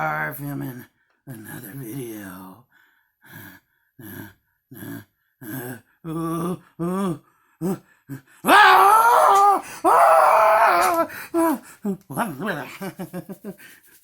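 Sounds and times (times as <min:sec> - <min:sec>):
man grunting: 0:04.0 - 0:11.8
man wailing: 0:08.4 - 0:11.7.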